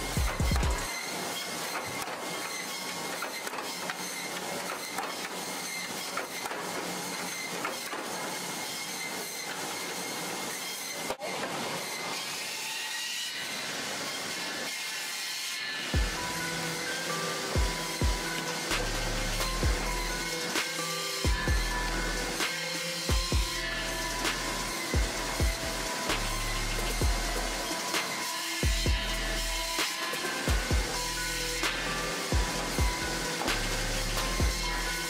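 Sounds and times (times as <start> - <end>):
thin steady whine: 16.0 - 35.0.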